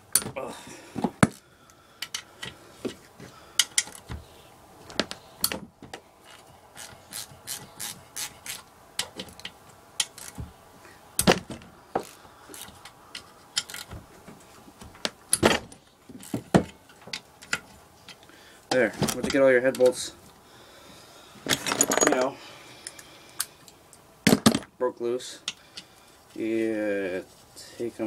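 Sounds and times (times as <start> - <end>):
hand ratchet clicking: 6.2 - 10.4.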